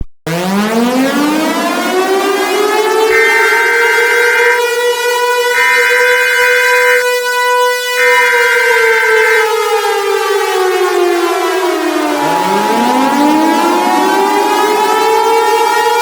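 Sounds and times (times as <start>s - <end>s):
civil defense siren wailing: 0.3s - 16.0s
higher steady tone: 3.1s - 7.2s, 7.9s - 9.6s, 11.3s - 16.0s.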